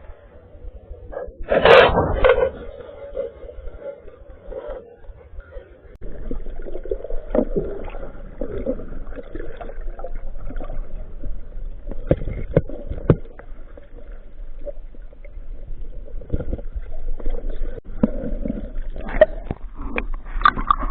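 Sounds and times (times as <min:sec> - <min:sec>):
muffled underwater gurgling: 0:00.0 - 0:20.9.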